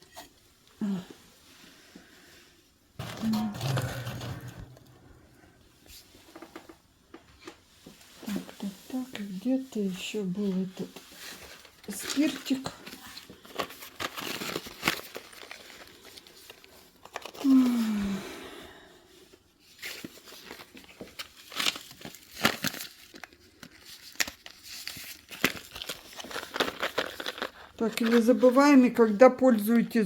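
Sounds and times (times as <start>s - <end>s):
paper crumpling and tearing: 3.0s - 5.1s, 10.9s - 17.8s, 19.6s - 28.6s.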